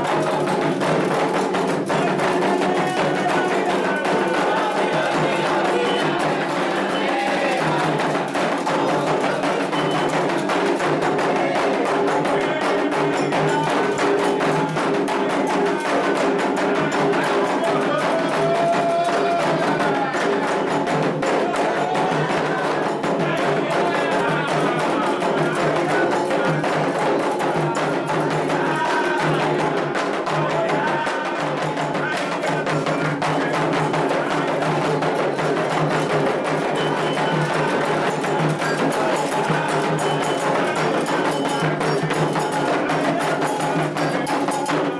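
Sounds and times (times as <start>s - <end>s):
hand drums beating fast rhythm: 0.0s - 44.9s
voices singing: 0.0s - 44.9s
struck bell: 35.8s - 44.9s.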